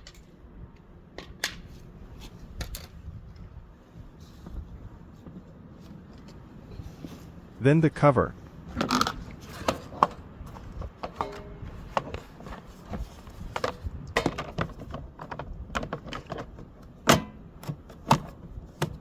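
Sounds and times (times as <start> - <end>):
mower engine cover parts knocking: 8.7 - 19.0.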